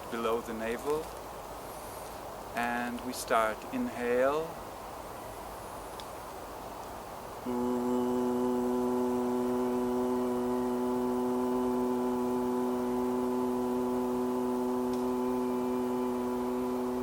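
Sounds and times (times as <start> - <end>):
man holding a low ooh: 7.4 - 17.0.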